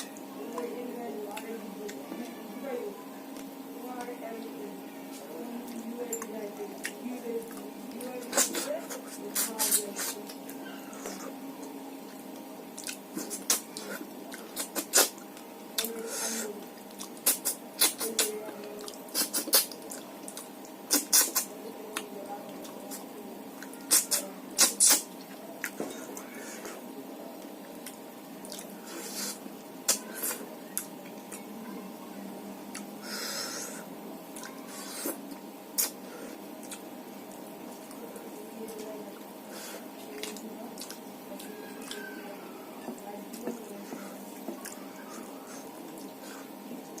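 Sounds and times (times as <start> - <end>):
wet chewing and lip-smacking: 5.7 - 16.0, 16.7 - 26.3, 27.4 - 31.5, 32.7 - 33.0, 36.6 - 38.0, 40.1 - 42.1
hissing slurp: 13.2 - 15.2, 20.9 - 21.5, 23.8 - 25.1.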